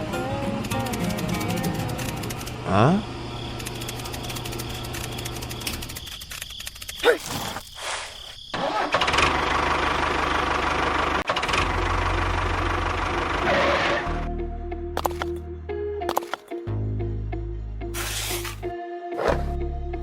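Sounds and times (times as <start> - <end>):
small motor ticking and running: 0.0 - 7.0, 15.0 - 15.4.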